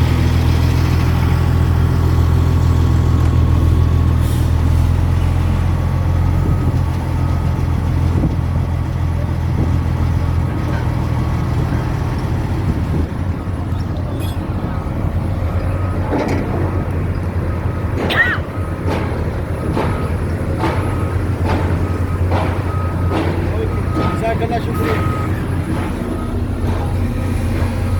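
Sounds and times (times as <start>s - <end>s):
crane engine running: 0.0s - 27.9s
sharp knocks: 18.0s - 27.9s
short warning beeps: 20.8s - 27.0s.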